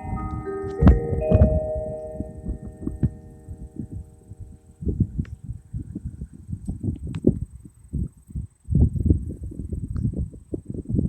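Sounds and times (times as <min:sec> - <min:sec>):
church bells humming: 0:00.0 - 0:04.8.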